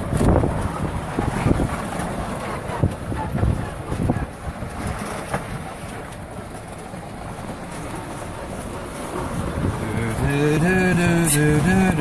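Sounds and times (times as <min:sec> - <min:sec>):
wind on microphone: 0:00.0 - 0:05.8, 0:08.8 - 0:12.0
car driving rumble: 0:00.0 - 0:12.0.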